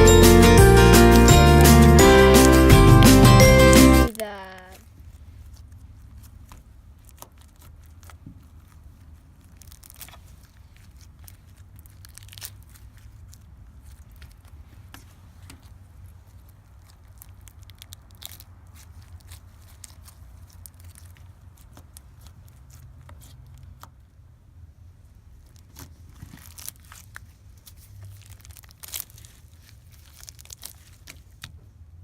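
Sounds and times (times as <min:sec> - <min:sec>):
slime crackling and popping: 0:06.2 - 0:23.9, 0:25.4 - 0:31.5.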